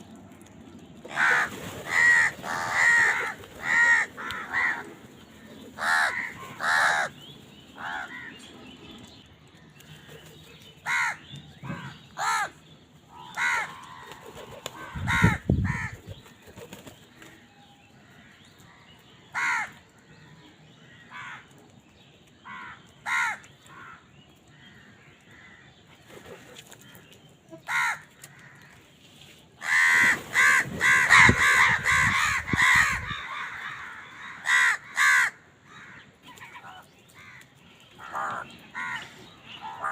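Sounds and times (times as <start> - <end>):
crows cawing: 1.1 - 5.0, 5.8 - 7.2, 7.8 - 8.3, 10.8 - 16.0, 19.3 - 20.3, 20.9 - 21.5, 22.4 - 25.7, 27.6 - 28.8, 29.6 - 39.9.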